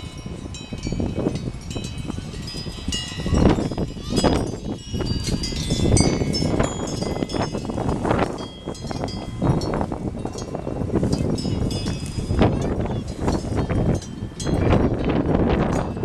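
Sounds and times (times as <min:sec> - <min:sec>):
metal bells jangling: 0:00.0 - 0:16.0
wind buffeting microphone: 0:00.0 - 0:16.0.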